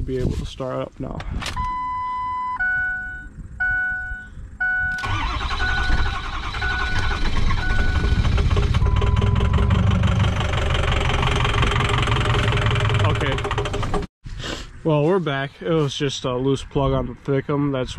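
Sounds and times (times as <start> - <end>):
diesel engine starting and idling: 4.8 - 14.1.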